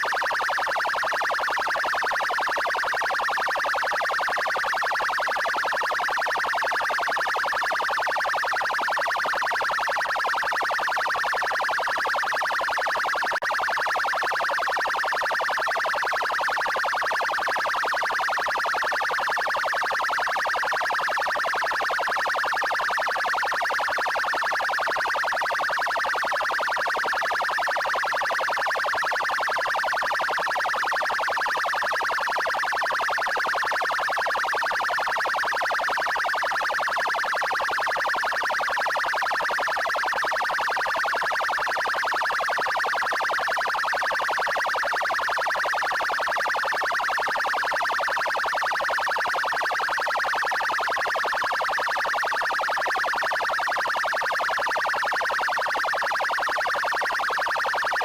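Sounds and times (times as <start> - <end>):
fast-pulsing police siren: 0.0 - 58.0.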